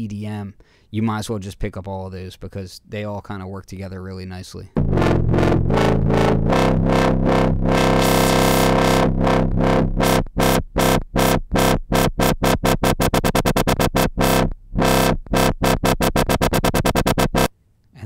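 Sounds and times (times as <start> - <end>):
wobble bass synth: 4.8 - 17.5.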